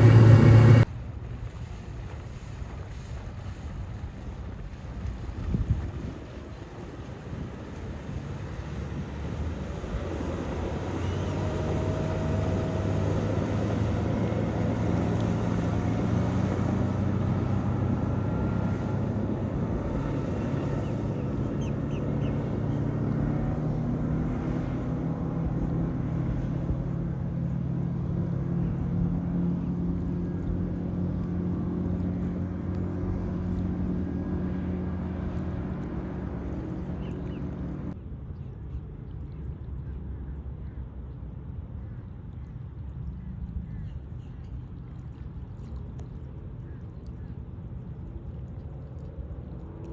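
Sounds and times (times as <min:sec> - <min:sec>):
outboard motor running: 0:00.0 - 0:00.9, 0:02.4 - 0:38.0.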